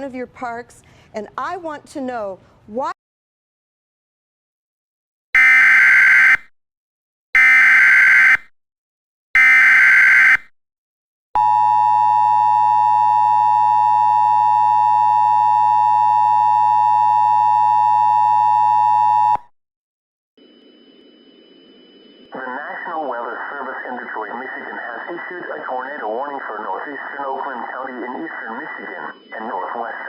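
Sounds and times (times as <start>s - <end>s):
steady warning alarm tone: 5.4s - 6.4s, 7.4s - 8.4s, 9.4s - 10.5s, 11.4s - 19.4s, 20.4s - 30.0s
digital data tone bursts: 22.3s - 24.8s, 26.2s - 30.0s
faint radio hiss: 22.4s - 30.0s.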